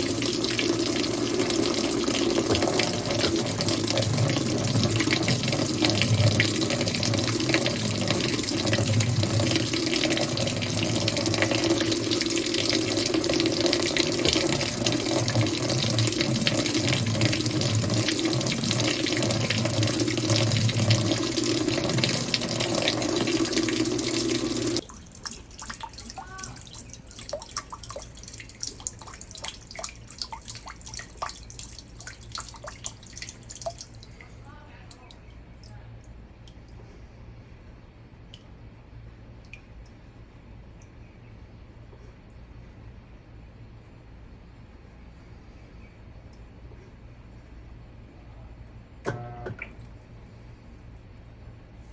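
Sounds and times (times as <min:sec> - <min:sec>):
water running at full flow: 0:00.0 - 0:35.0
faint water drips: 0:00.0 - 0:43.0, 0:46.2 - 0:46.5, 0:49.1 - 0:51.9.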